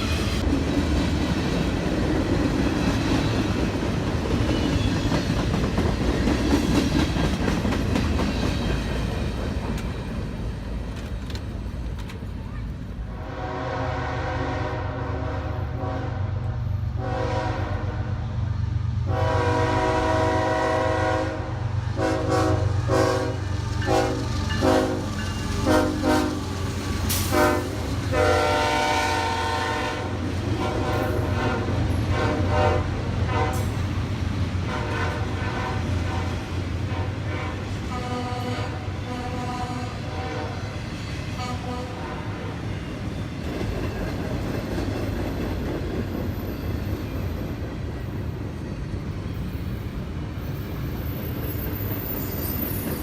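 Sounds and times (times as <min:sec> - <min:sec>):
train rumble and rail clatter: 0:00.0 - 0:53.0
locomotive air horn blasts: 0:13.2 - 0:18.3, 0:19.1 - 0:26.4, 0:27.1 - 0:33.8, 0:34.7 - 0:40.7, 0:41.3 - 0:42.5.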